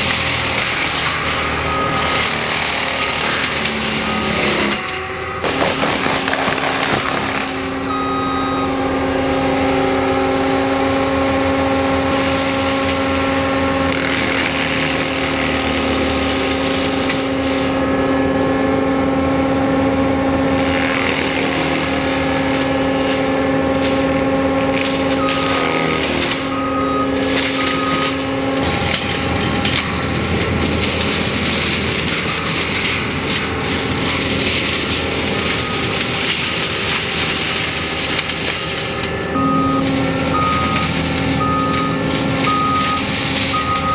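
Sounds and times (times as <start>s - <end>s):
mulcher machine humming: 0.0s - 43.9s
rough machine noise: 0.0s - 43.9s.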